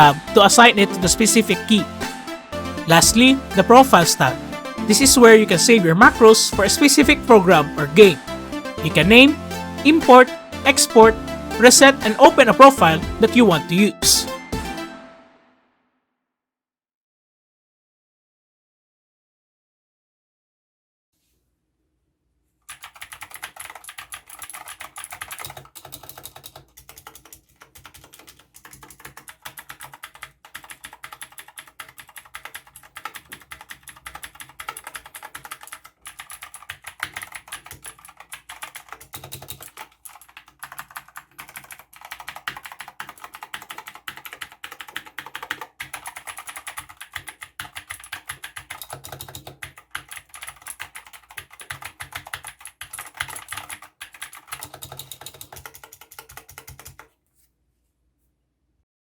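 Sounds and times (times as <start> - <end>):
fast clicky keyboard typing: 0.0 - 1.9, 2.9 - 8.2, 8.8 - 14.2, 22.7 - 57.1.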